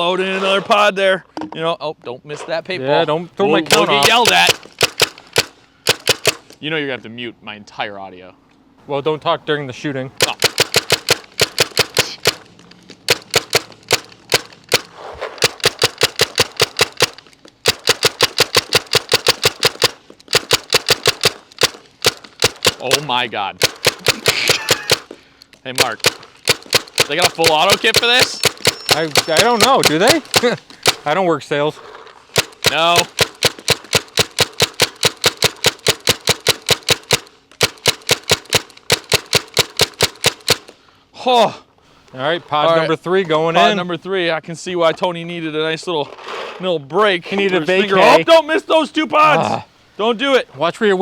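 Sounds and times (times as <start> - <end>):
paintball marker firing: 3.5 - 6.6, 10.2 - 25.2, 25.8 - 31.2, 32.3 - 40.8.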